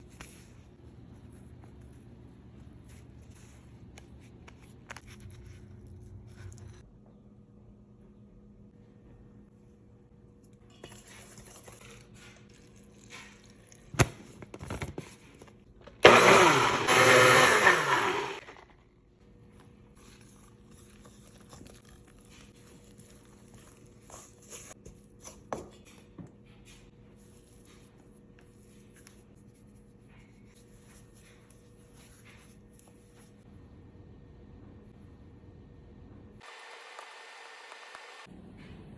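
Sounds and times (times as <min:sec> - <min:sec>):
blender running: 0:16.0 - 0:18.6, 0:36.4 - 0:38.3.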